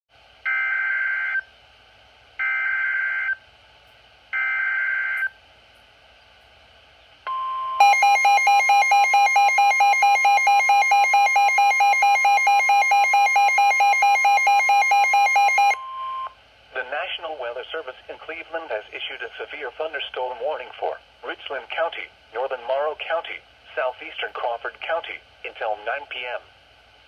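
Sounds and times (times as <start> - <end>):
wavering attention signal: 7.3 - 16.3.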